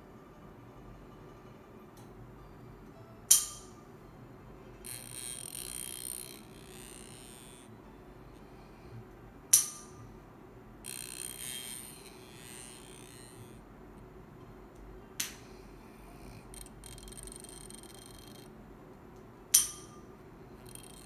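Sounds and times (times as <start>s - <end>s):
sharp click: 3.3s - 3.7s, 9.5s - 10.0s, 19.5s - 20.0s.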